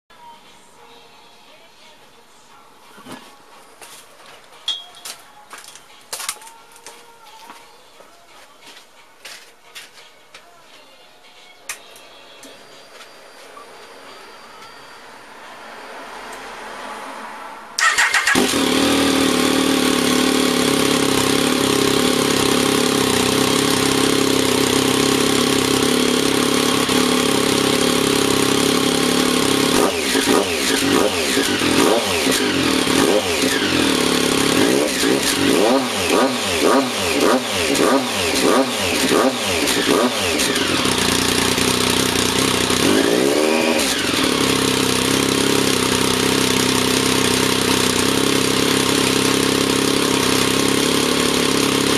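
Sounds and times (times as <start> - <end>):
engine idling and revving: 15.4 - 51.9.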